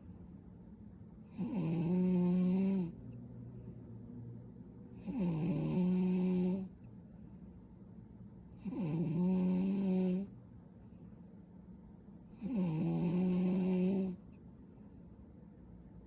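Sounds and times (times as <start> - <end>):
woman snoring: 1.3 - 3.0, 5.0 - 6.7, 8.6 - 10.3, 12.4 - 14.2.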